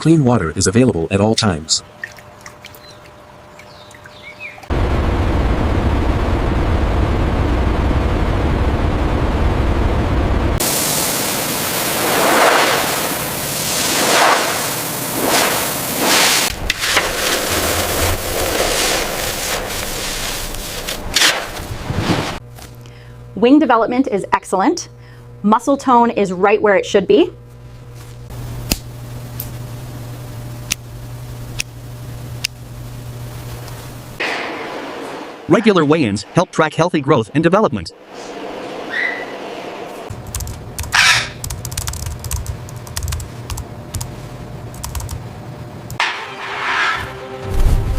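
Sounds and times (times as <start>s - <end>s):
steady low hum: 0.0s - 46.0s
low rumbling noise: 4.3s - 22.4s, 28.3s - 41.4s
bright hiss with whooshes: 10.6s - 22.4s.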